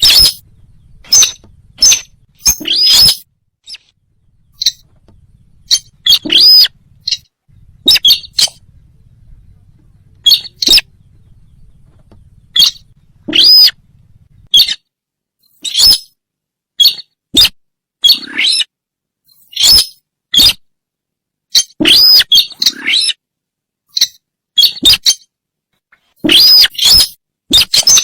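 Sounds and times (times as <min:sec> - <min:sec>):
short sharp bird calls: 0:00.0 - 0:14.8, 0:26.2 - 0:28.0.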